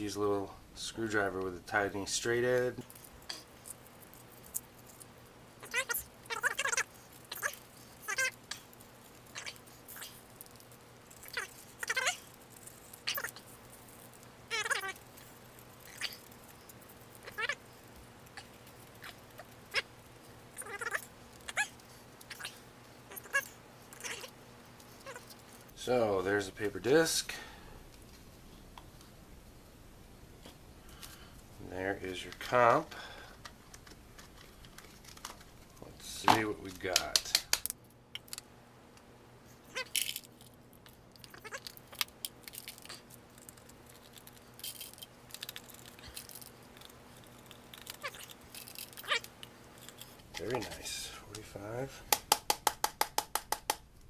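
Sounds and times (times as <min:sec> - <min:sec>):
firework stars clicking and rattling: 0:02.8 - 0:22.6, 0:39.7 - 0:50.8.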